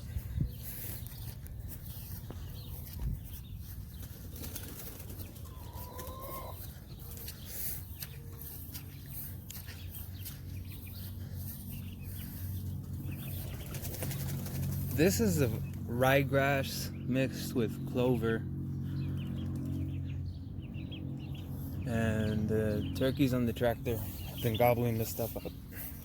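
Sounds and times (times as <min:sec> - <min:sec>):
poultry call: 0:05.4 - 0:06.8.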